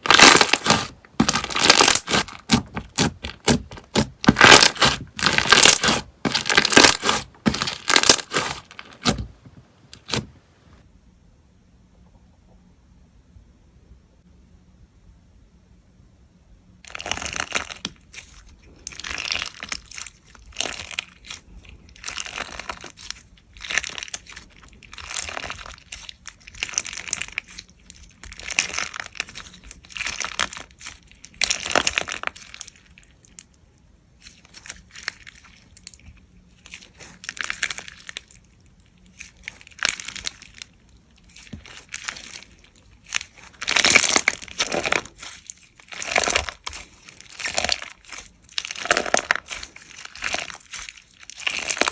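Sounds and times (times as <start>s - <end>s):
slime crackling when squeezed: 0.0s - 9.4s.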